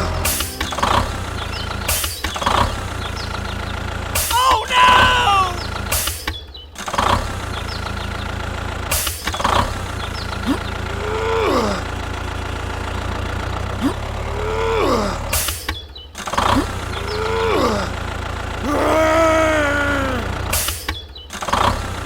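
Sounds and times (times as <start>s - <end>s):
wail rising and falling: 4.4s - 5.7s, 18.7s - 20.4s
low engine drone: 10.4s - 15.1s.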